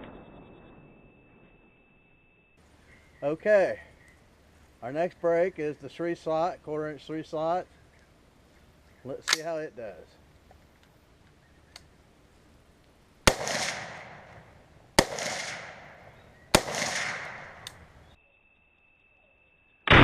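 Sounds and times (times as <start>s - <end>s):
rifle shots echoing: 13.2s - 18.1s.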